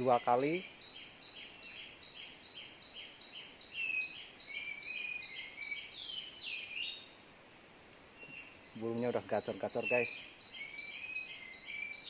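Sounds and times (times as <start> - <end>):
bird chirping rapidly: 8.2 - 12.0.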